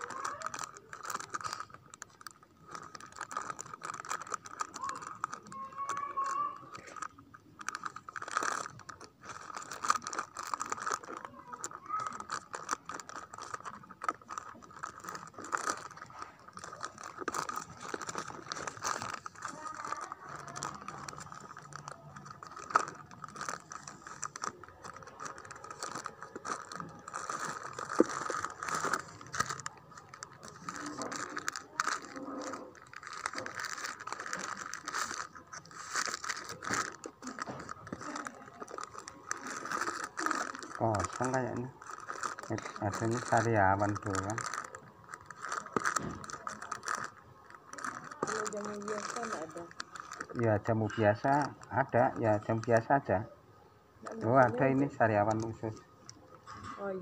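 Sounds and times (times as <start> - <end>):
packets rattling and scraping: 0.0 - 53.2, 54.0 - 57.0.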